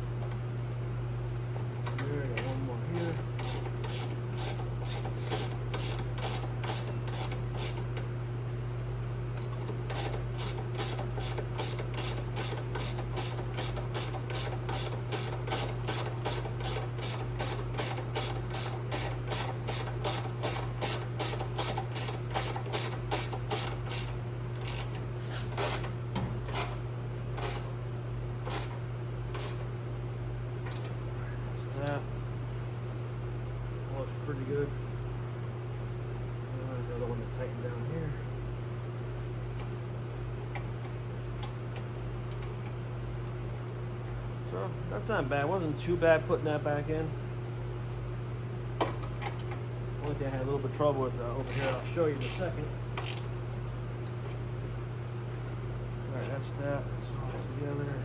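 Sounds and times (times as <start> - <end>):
ratchet wrench clicking: 9.9 - 25.0, 51.4 - 53.3.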